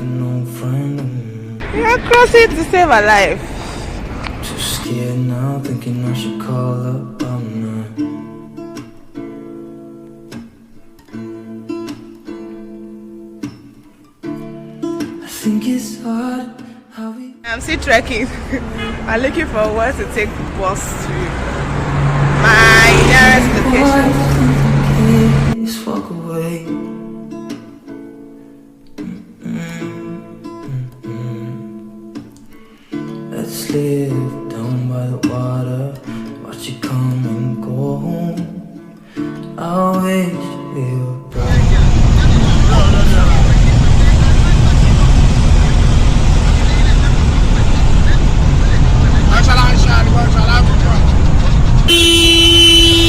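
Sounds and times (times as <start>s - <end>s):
acoustic guitar strumming chords: 4.3s - 16.8s, 22.1s - 42.1s.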